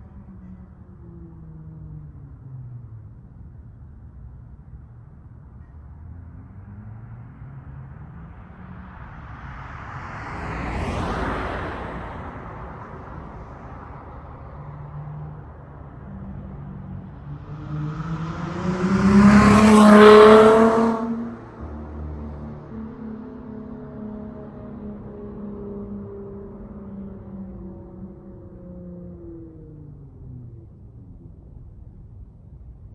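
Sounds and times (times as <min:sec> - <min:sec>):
faint vehicle passing: 0:00.0 - 0:32.9
car accelerating past: 0:06.2 - 0:30.2.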